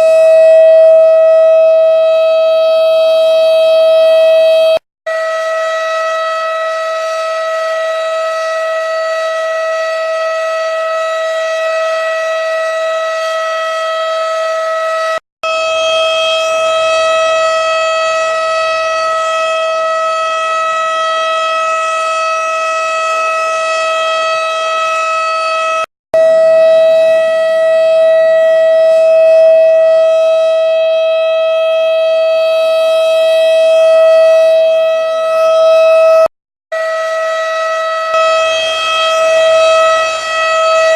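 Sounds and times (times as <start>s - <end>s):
steady high-pitched siren: 0.0s - 40.9s.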